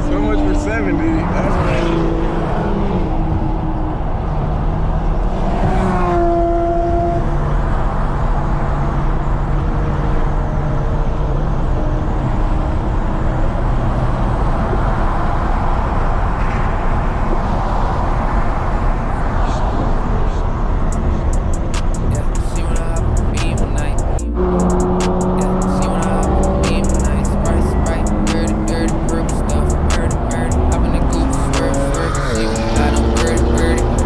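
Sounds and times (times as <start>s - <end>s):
car road and wind noise: 0.0s - 34.0s
rising engine note: 20.2s - 34.0s.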